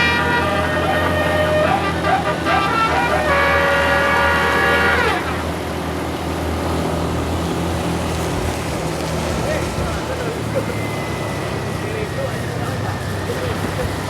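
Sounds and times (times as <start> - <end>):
musical air horn: 0.0 - 5.9
bus engine running: 0.0 - 14.0.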